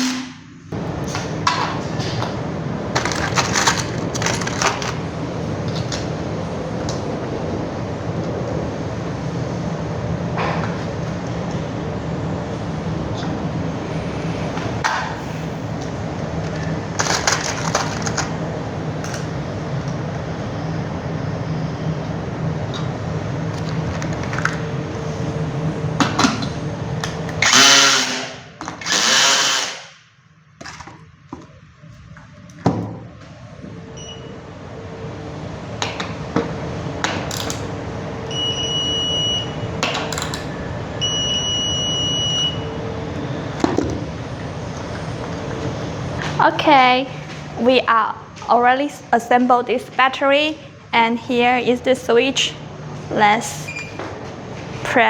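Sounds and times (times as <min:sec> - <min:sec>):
machine hum: 0:00.0 - 0:55.0
power tool whirring: 0:27.4 - 0:30.0.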